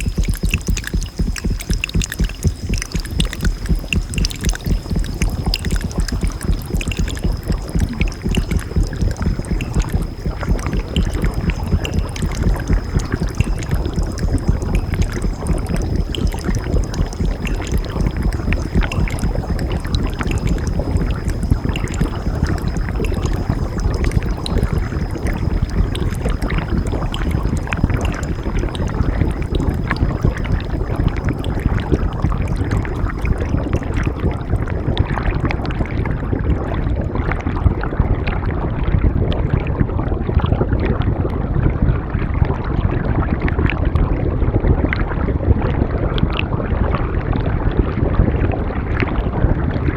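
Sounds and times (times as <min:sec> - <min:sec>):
thin high steady tone: 0:00.0 - 0:30.8.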